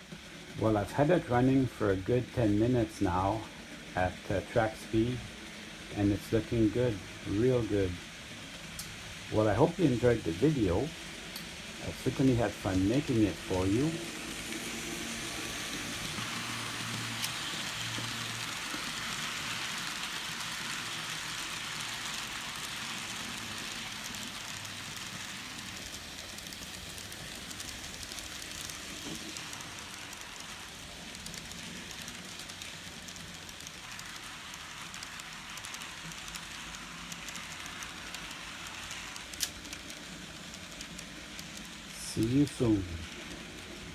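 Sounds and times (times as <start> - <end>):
model train wheels rolling on rails: 0.0 - 43.9.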